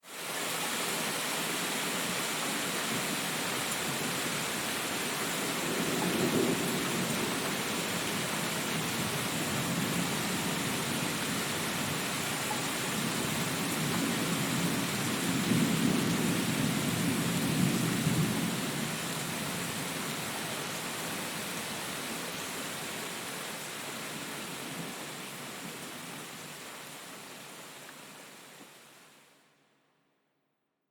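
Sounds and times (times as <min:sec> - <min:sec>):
thunder rumbling: 0:05.5 - 0:19.7.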